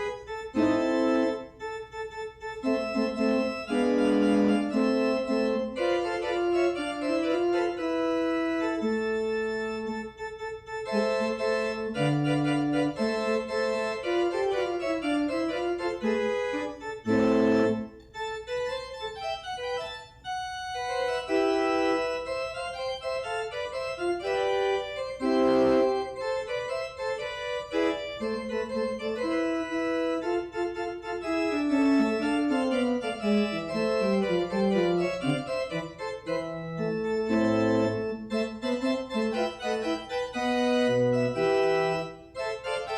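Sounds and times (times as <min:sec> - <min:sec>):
church organ playing: 0:00.0 - 0:42.9.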